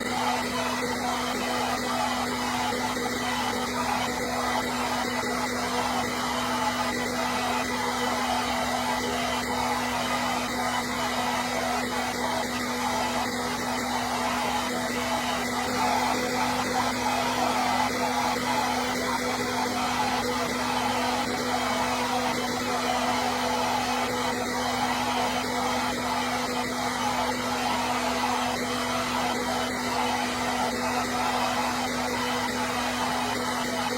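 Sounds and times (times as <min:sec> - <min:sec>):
hair dryer running: 0:00.0 - 0:33.9.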